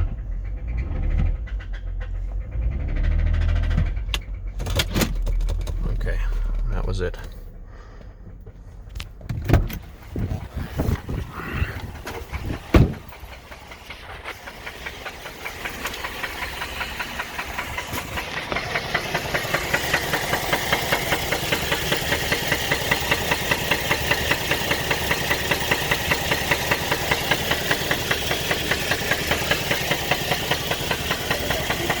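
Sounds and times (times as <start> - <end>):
engine running with rhythmic knock: 0.0 - 32.0
sharp thump: 12.1 - 13.1.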